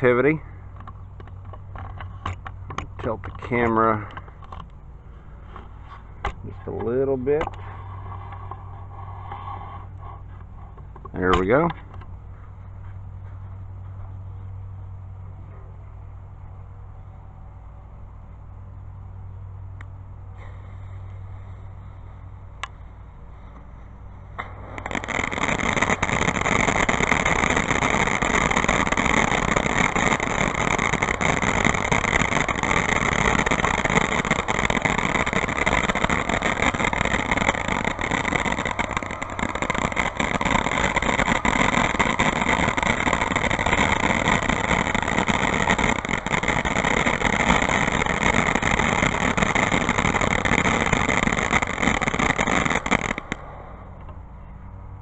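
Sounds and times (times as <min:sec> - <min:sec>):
firework fountain hissing and crackling: 0:00.0 - 0:00.5, 0:20.3 - 0:23.4, 0:24.0 - 0:54.0.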